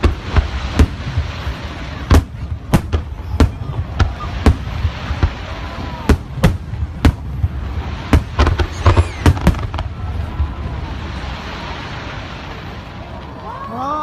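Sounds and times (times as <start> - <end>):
fireworks bangs: 0.0 - 13.6
noisy haze: 0.0 - 14.0
faint falling whistle: 8.7 - 9.5.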